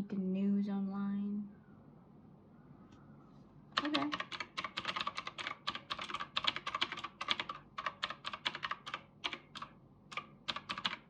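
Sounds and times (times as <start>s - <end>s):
computer keyboard typing: 3.7s - 11.0s.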